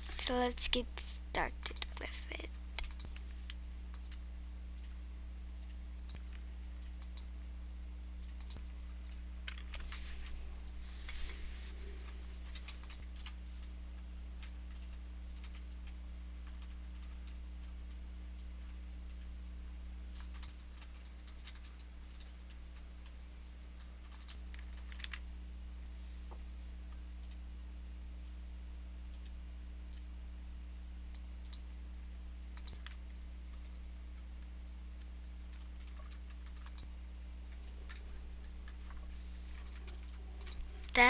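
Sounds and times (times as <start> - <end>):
steady low hum: 0.0 - 41.0
light clicks and taps: 1.6 - 2.1.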